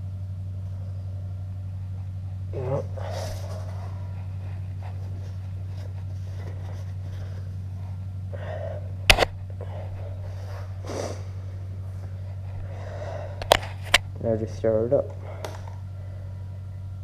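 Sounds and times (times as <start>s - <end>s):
steady low hum: 0.0s - 17.0s
person breathing or sniffing: 9.6s - 11.5s.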